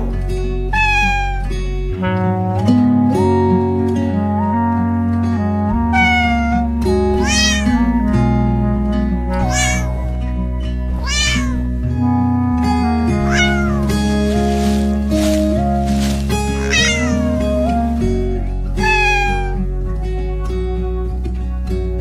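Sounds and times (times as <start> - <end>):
background music: 0.0 - 22.0
cat meowing: 0.7 - 1.6, 5.9 - 7.9, 9.3 - 10.0, 11.0 - 11.7, 13.2 - 14.2, 16.5 - 17.8, 18.8 - 19.7.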